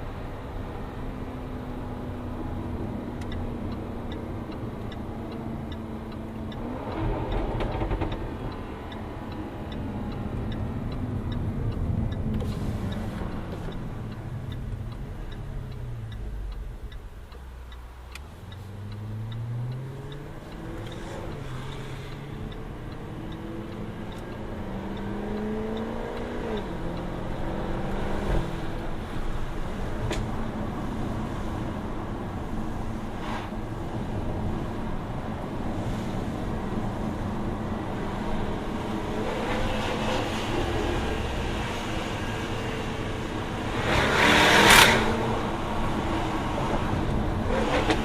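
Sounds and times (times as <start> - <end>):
car engine revving through gears: 0.9 - 31.8, 34.1 - 48.0
light regular ticking: 2.6 - 31.0
exhaust crack: 6.9 - 8.6.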